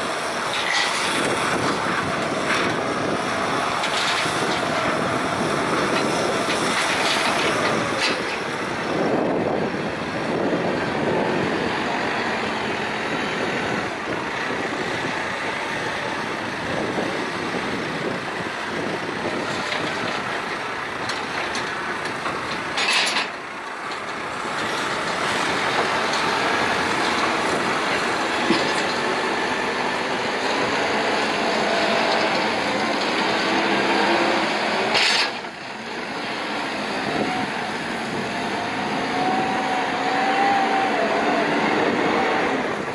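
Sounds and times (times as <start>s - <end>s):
diesel engine revving: 0.0s - 42.9s.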